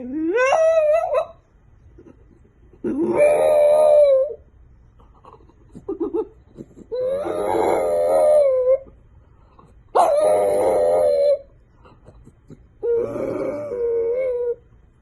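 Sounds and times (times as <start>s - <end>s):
dog howling: 0.0s - 1.4s, 2.8s - 4.4s, 6.9s - 9.0s, 9.9s - 11.5s, 12.8s - 14.7s
dog whimpering: 0.0s - 1.4s, 2.0s - 4.4s, 5.1s - 14.7s.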